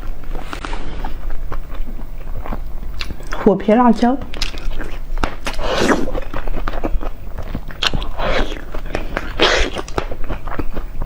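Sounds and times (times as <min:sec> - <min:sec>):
wet chewing of food: 0:00.0 - 0:03.5, 0:04.2 - 0:11.0
squelching bites: 0:04.2 - 0:10.8.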